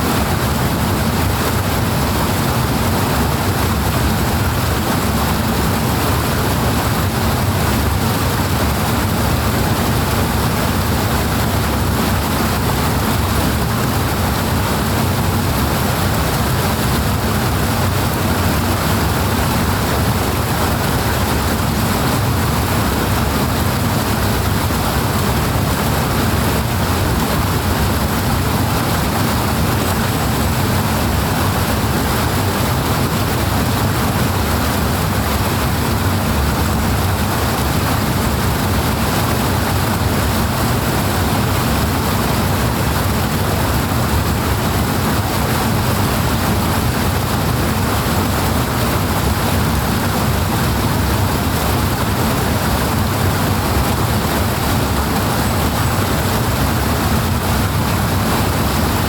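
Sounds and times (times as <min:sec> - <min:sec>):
rushing water roar: 0:00.0 - 0:59.0.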